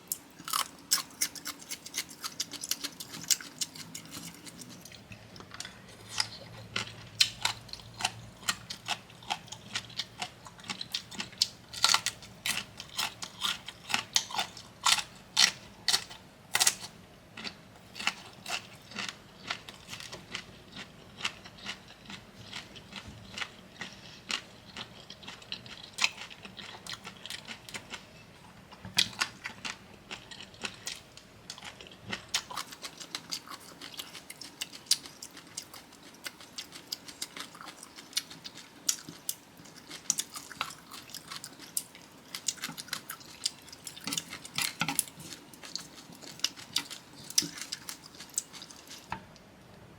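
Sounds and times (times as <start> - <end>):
crunchy chewing: 0.0 - 28.1, 28.9 - 49.1.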